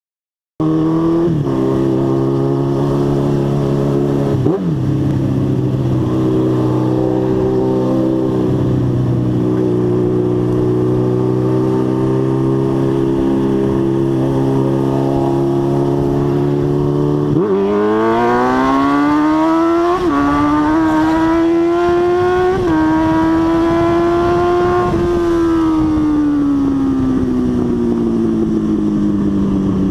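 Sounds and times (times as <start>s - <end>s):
motorcycle engine revving: 0.6s - 29.9s.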